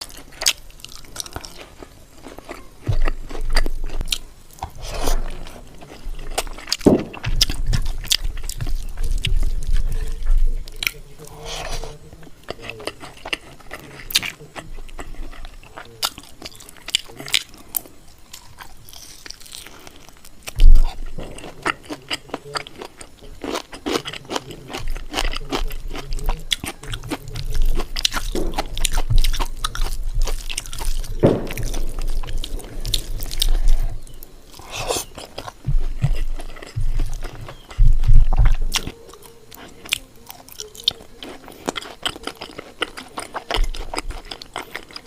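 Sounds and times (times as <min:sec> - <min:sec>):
chewing and crunching food: 0:00.0 - 0:45.0
loud low thump: 0:06.8 - 0:07.9, 0:28.2 - 0:29.4, 0:31.1 - 0:34.0.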